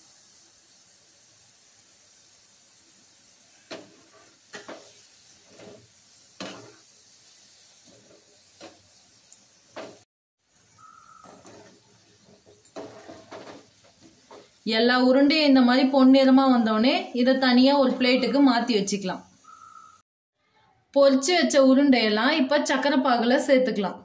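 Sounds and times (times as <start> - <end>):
food deep-frying in oil: 0.0 - 20.0
ladle knocking frying pan: 11.2 - 14.5.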